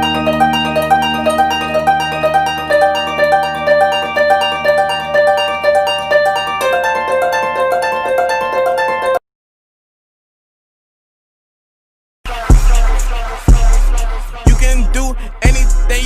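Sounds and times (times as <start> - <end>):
held low chord: 0.0 - 9.2
plucked harp-like notes: 0.0 - 9.2.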